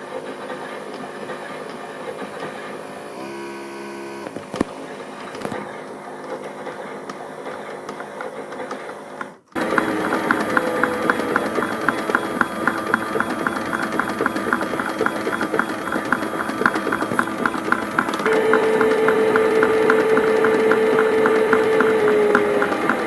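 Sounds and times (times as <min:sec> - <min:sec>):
rapid regular clicking: 0:07.5 - 0:23.0
toy washing machine motor: 0:09.6 - 0:23.0.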